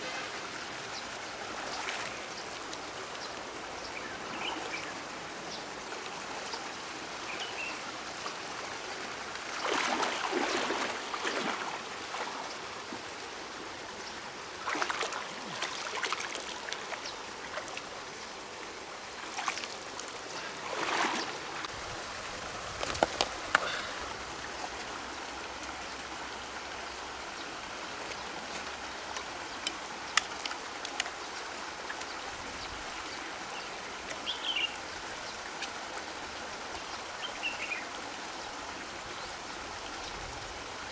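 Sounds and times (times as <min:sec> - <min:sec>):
water splashing and sloshing: 0:00.0 - 0:07.2, 0:07.9 - 0:13.3, 0:14.6 - 0:18.0, 0:19.1 - 0:21.9
high steady whine: 0:00.0 - 0:11.0
river water running: 0:00.0 - 0:40.9.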